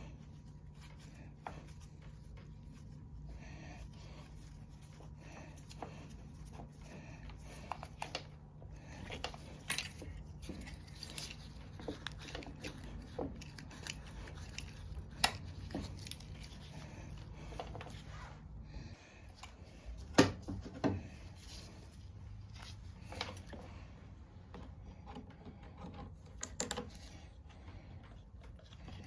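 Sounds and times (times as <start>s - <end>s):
steady low hum: 0.0s - 29.0s.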